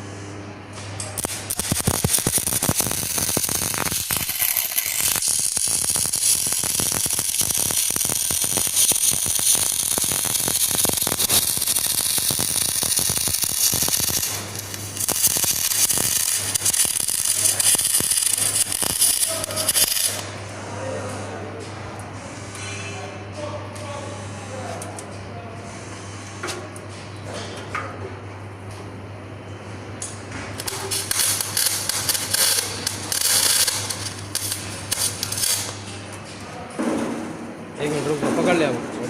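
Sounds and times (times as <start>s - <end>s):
welding arc crackling: 1.0s - 20.3s, 30.5s - 35.9s.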